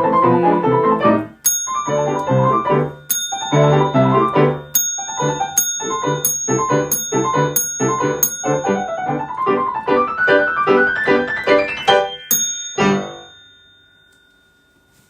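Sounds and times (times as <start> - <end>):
piano playing chords: 0.0 - 13.6
bright bell dinging: 1.4 - 9.6, 11.8 - 15.0.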